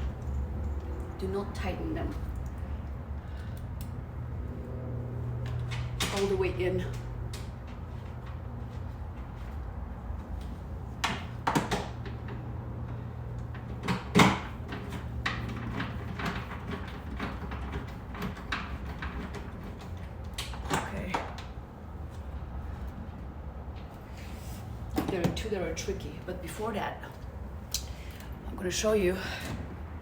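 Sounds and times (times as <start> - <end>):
steady low hum: 0.0 - 13.9.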